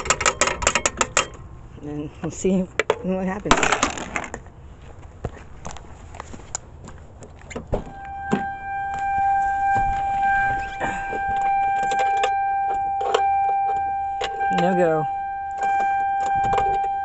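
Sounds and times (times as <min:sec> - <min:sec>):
light knocks and steps: 0:04.4 - 0:13.2
thump: 0:07.7 - 0:08.5
car electronic warning tone: 0:07.8 - 0:17.0.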